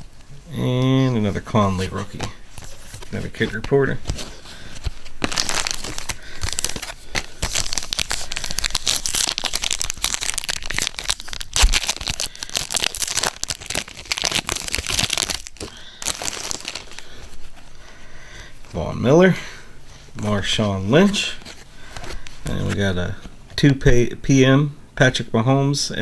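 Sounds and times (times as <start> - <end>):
wrapper crinkling and tearing: 1.9 - 17.6.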